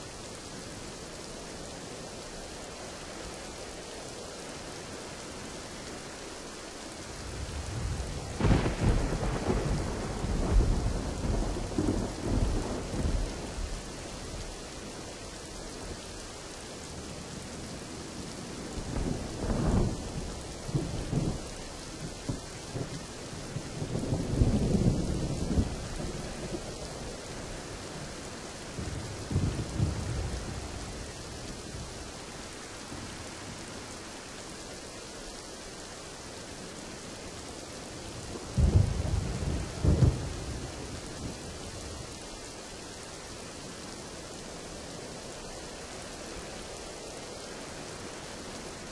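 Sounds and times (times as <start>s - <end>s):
heavy rain hissing: 0.0s - 48.9s
thunder rumbling: 7.2s - 14.0s, 23.6s - 26.8s, 28.7s - 32.0s, 38.5s - 42.1s.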